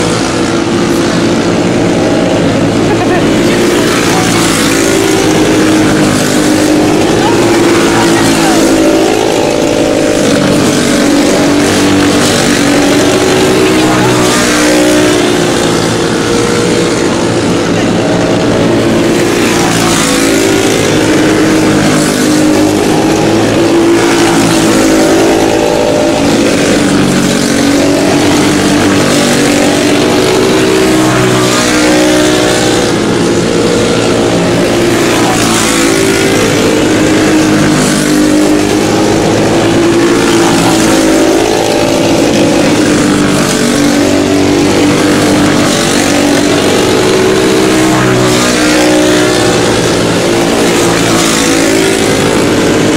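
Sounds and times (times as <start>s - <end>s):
racing kart engines: 0.0s - 52.9s.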